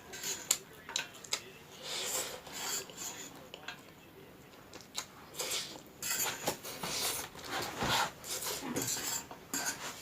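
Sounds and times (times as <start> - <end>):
person chewing noodles: 4.7 - 7.5.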